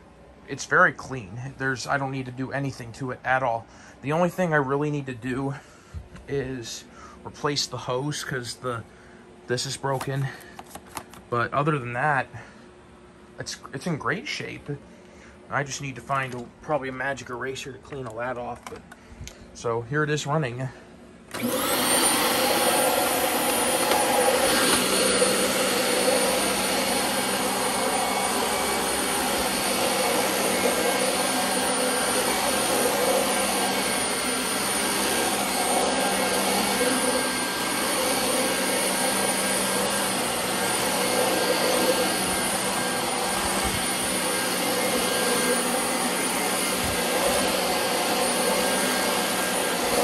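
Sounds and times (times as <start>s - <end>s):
vacuum cleaner running: 20.7s - 50.0s.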